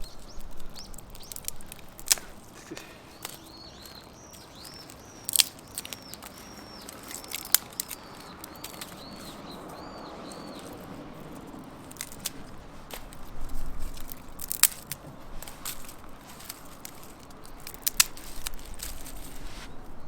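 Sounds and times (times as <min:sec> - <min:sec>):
bird chirping: 0:00.0 - 0:14.5
wood fire crackling and popping: 0:00.0 - 0:19.5.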